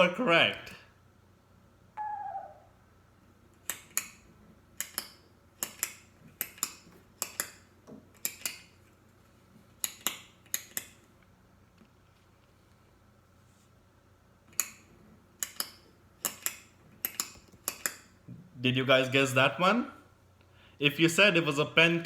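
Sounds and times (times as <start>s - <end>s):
falling tone: 2.0s - 2.9s.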